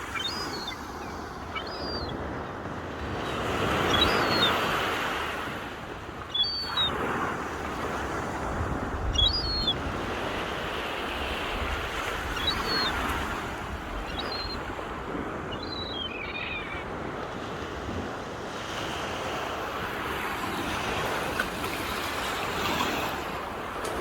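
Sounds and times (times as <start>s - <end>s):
bird chirping: 0.0s - 2.2s, 6.3s - 6.9s, 9.2s - 9.8s, 14.1s - 14.6s, 15.5s - 16.8s
sea waves washing onto shore: 0.0s - 24.0s
wind rumble on microphone: 7.5s - 15.6s.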